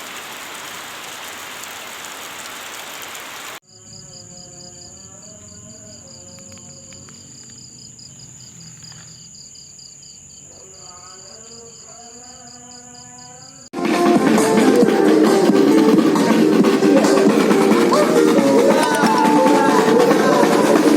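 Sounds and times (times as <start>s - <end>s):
rain falling: 0.0s - 3.6s, 14.5s - 20.9s
crickets chirping: 0.0s - 13.8s
distant voice chanting: 14.6s - 20.9s.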